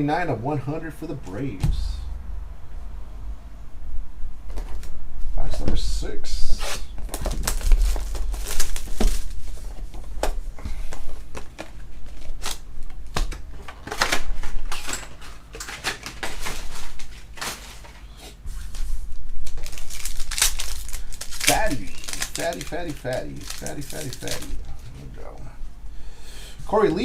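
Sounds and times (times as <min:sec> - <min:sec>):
packaging crinkling and rustling: 0:07.0 - 0:25.2.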